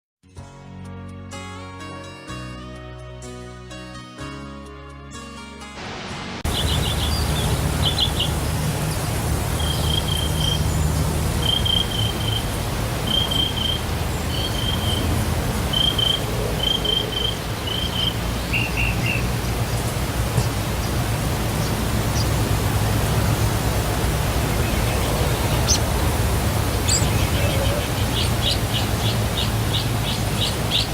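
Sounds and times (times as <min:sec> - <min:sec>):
waterfall rushing: 0:05.8 - 0:30.9
small bird chirping: 0:06.5 - 0:15.1, 0:15.7 - 0:19.3, 0:26.8 - 0:30.9.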